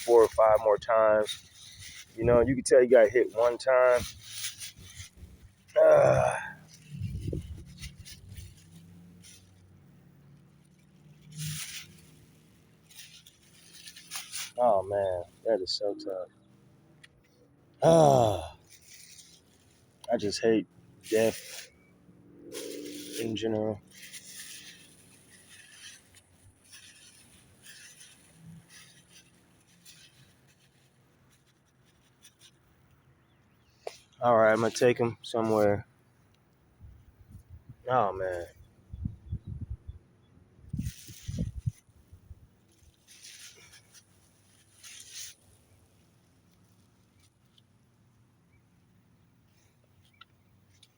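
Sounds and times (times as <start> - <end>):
short rustling: 0.0 - 39.8, 40.6 - 50.9.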